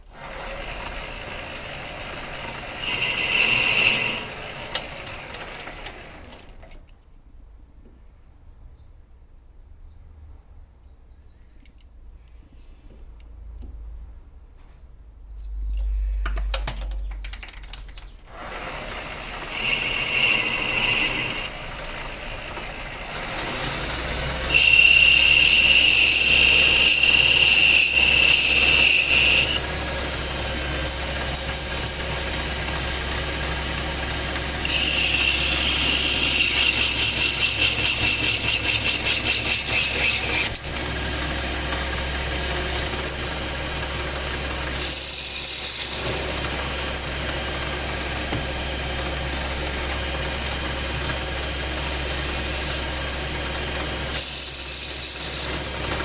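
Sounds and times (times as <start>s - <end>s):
power tool motor whining: 0.1s - 6.5s, 18.3s - 56.0s.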